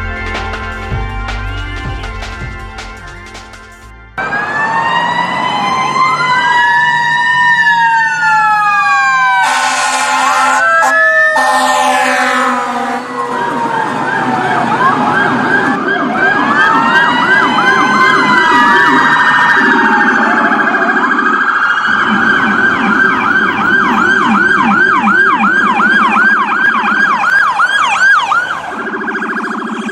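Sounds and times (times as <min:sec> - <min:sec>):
electronic siren sweeps: 0:00.0 - 0:29.9
siren wail: 0:00.0 - 0:29.9.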